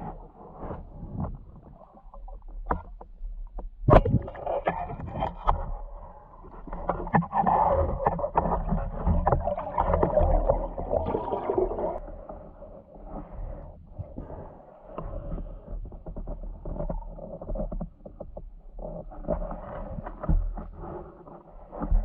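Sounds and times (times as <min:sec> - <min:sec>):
underwater rushing and gurgling: 0:03.9 - 0:17.6.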